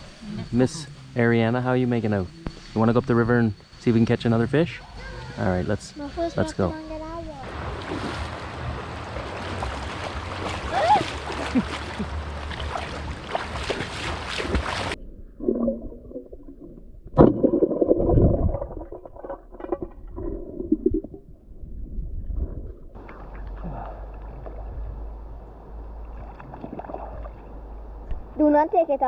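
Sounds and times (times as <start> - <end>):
muffled underwater gurgling: 0.0 - 29.0
river water rushing and splashing: 7.4 - 15.0.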